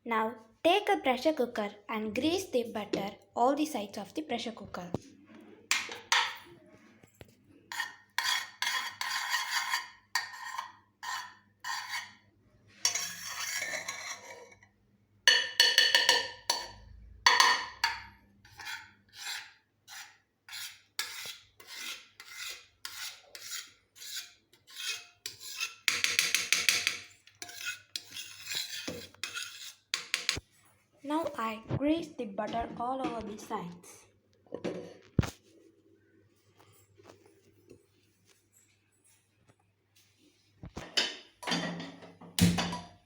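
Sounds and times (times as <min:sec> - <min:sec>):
scraping against metal pot: 0:07.7 - 0:14.7, 0:15.6 - 0:30.4.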